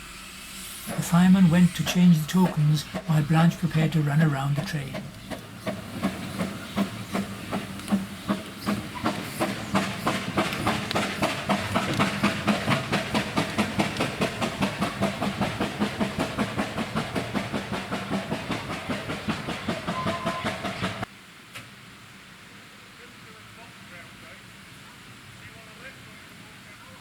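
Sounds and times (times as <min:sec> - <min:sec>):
steam locomotive chuffing: 0:00.0 - 0:21.1
steam hiss: 0:00.0 - 0:27.0.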